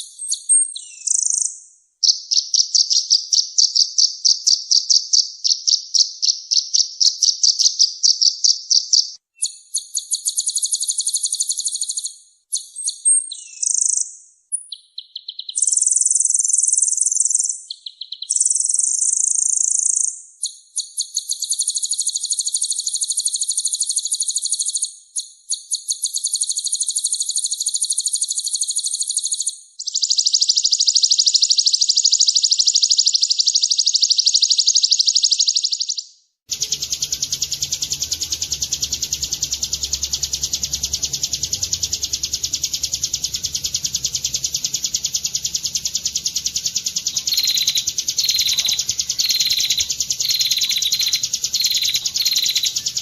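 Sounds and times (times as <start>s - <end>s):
buzzy rattling bird calls: 0.0s - 14.0s, 36.5s - 53.0s.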